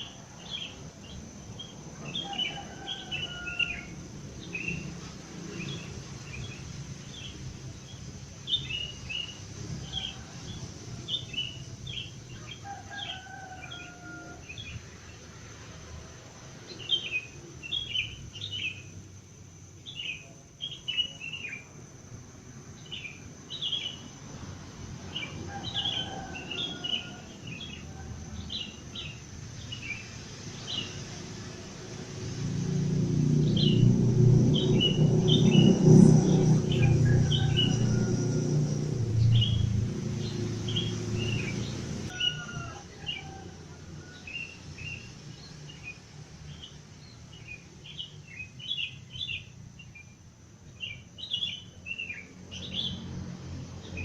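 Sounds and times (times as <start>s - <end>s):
birds chirping: 0.0s - 15.1s, 33.4s - 43.5s.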